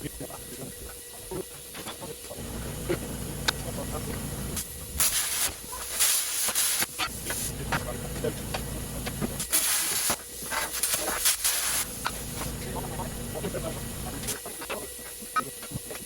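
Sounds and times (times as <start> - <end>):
low steady hum: 2.4 - 5.2, 7.1 - 9.5, 11.8 - 14.4
loud hissing bursts: 2.4 - 14.4.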